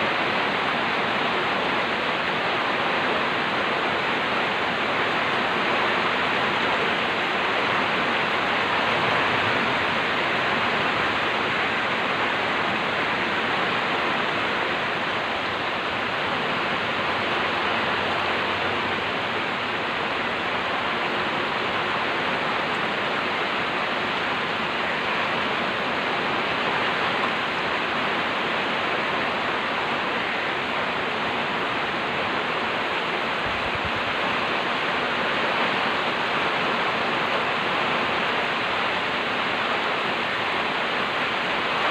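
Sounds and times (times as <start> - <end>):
heavy rain pouring: 0.0 - 41.9
strong wind: 0.0 - 41.9.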